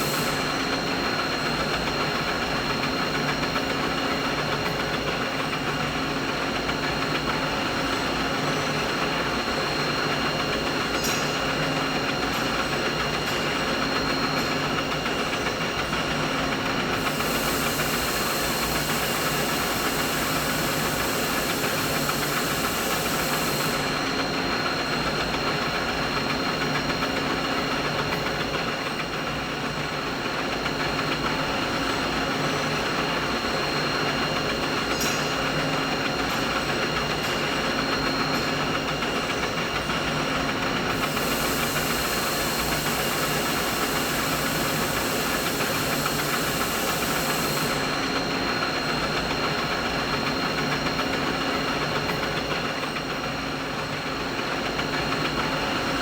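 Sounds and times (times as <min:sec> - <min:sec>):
steady mechanical hum: 0:00.0 - 0:56.0
thin high whine: 0:40.9 - 0:48.7
high hiss: 0:41.0 - 0:48.0.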